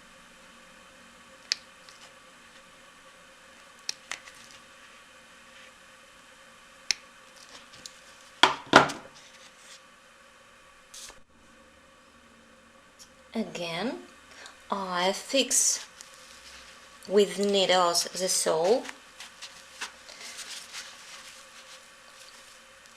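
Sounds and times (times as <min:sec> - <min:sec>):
short hiss: 0:10.9 - 0:11.2.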